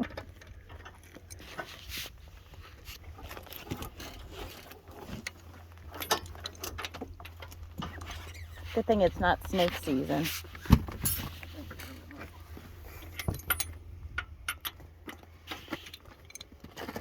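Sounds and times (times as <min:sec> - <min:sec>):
lug wrench clinking on lug nuts: 0:13.0 - 0:15.3.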